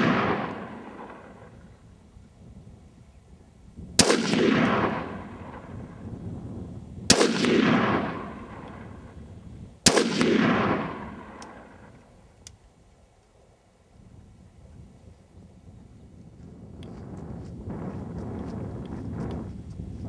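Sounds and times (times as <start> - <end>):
rifle shots with rolling echo: 0.0 - 1.8, 4.0 - 6.2, 7.1 - 12.2.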